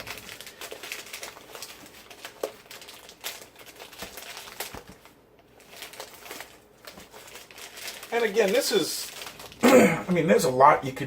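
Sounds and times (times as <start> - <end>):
plastic bag crinkling: 0.0 - 11.0.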